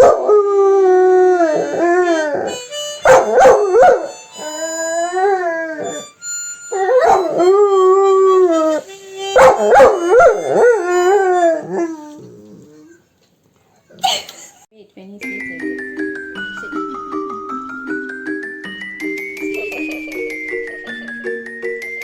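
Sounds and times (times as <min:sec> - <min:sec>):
dog howling: 0:00.0 - 0:06.1, 0:06.7 - 0:13.0
background music: 0:00.0 - 0:11.8, 0:15.2 - 0:22.0.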